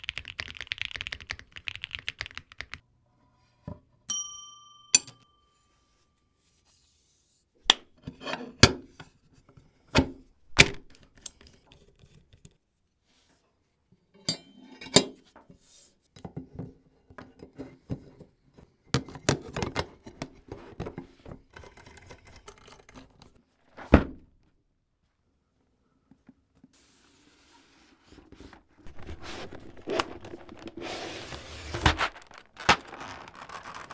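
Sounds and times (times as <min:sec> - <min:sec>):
plastic keycaps clacking: 0:00.0 - 0:02.8
ringing ping: 0:04.1 - 0:05.7
packaging rustling: 0:28.5 - 0:33.9.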